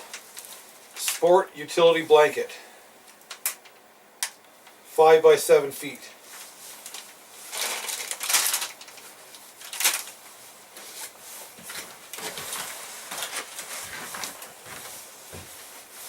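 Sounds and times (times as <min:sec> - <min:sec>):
camping gear rustling: 0:06.2 - 0:16.0.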